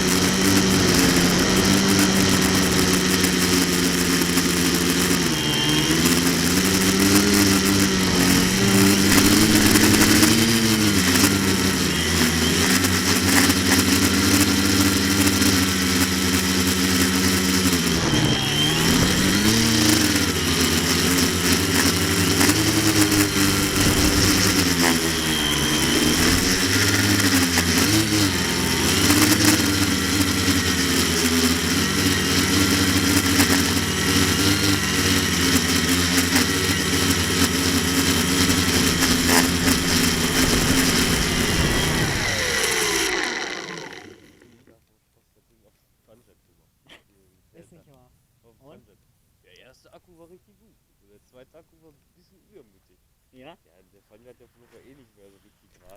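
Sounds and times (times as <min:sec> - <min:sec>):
drone motors and propellers: 0:00.0 - 0:44.6.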